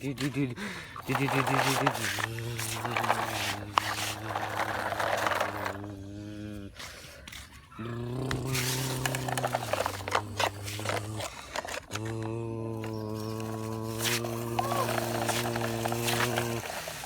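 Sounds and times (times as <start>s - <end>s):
rough hissy scraping: 0.9s - 5.9s, 13.0s - 17.0s.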